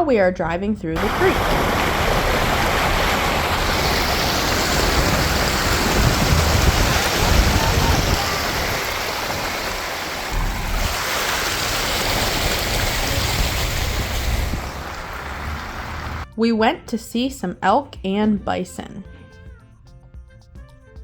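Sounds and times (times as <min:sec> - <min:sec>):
low vehicle rumble: 0:01.0 - 0:16.3
water rushing and splashing: 0:01.0 - 0:16.3.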